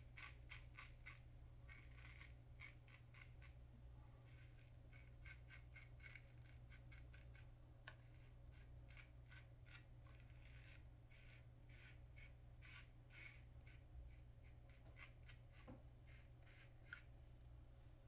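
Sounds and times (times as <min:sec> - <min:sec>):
razor scraping stubble: 0:00.1 - 0:03.6.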